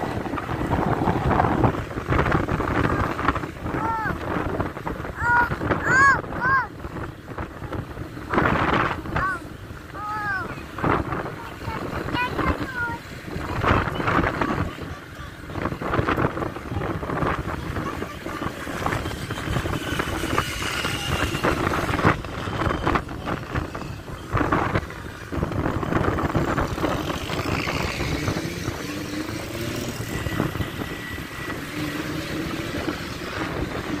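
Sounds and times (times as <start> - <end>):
buses passing: 0.0 - 34.0
wind buffeting microphone: 0.0 - 34.0.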